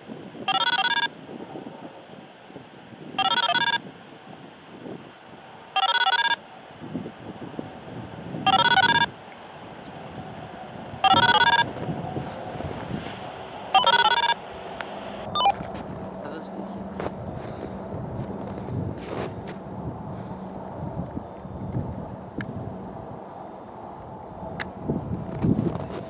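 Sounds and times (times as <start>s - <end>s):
dtmf control tones: 0.5s - 1.1s, 3.2s - 3.8s, 5.7s - 6.4s, 8.5s - 9.1s, 11.0s - 12.0s, 12.8s - 16.1s.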